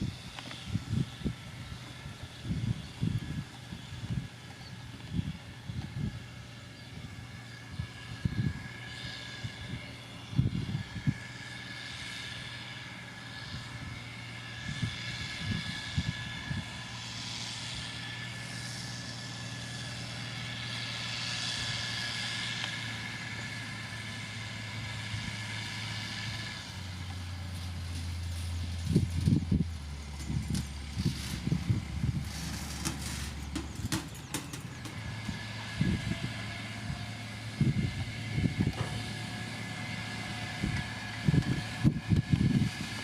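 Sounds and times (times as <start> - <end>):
diesel engine of heavy machinery: 0.0 - 43.0.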